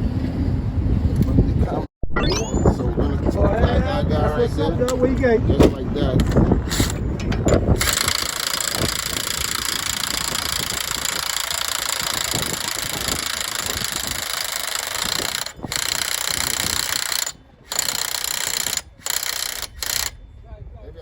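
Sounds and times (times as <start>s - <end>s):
impact wrench rattling: 6.7s - 20.2s.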